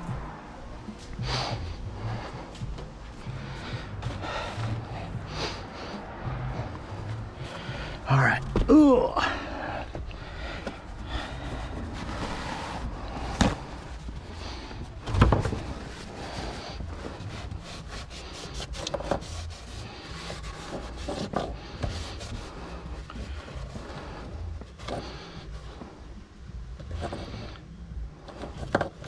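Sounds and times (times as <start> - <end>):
rag wiping: 10.5 - 25.7.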